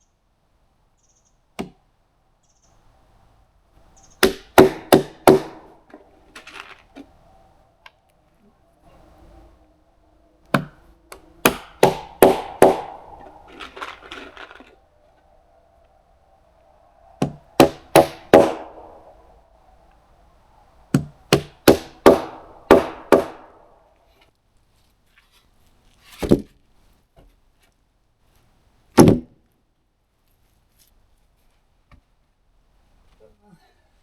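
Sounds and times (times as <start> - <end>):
hammer blows on wood: 4.2 - 6.0, 10.5 - 14.7, 17.2 - 19.2, 20.9 - 23.7.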